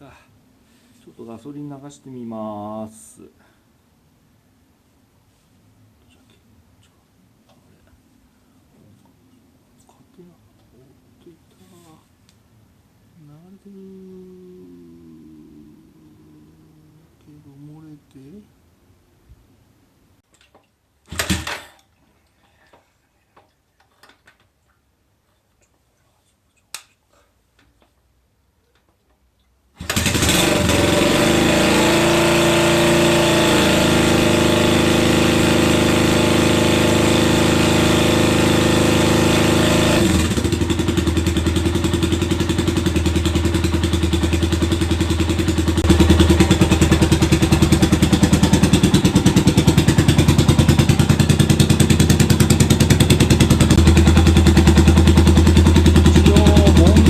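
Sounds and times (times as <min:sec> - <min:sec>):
single-cylinder engine starting and running: 0:21.1 - 0:21.8, 0:29.8 - 0:57.0.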